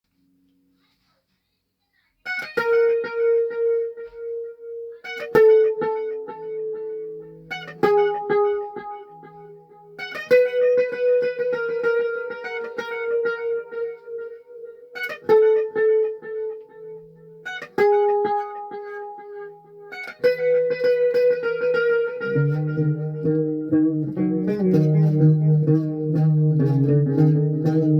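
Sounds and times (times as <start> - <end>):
electric guitar playing: 2.3 - 27.9.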